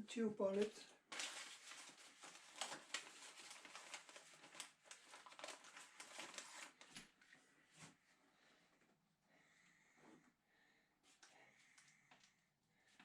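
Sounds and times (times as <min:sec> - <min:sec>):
plastic tubing rustling and crinkling: 0:00.4 - 0:08.0.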